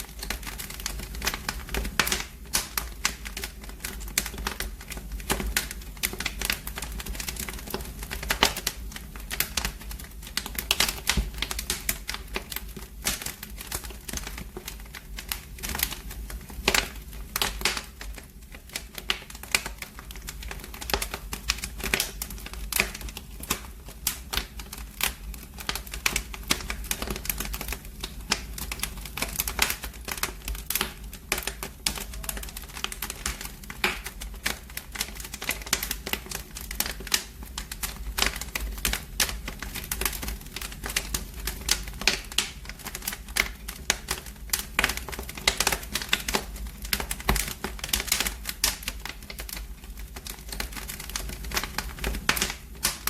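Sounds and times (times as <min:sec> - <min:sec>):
wood fire crackling: 0:00.0 - 0:53.0.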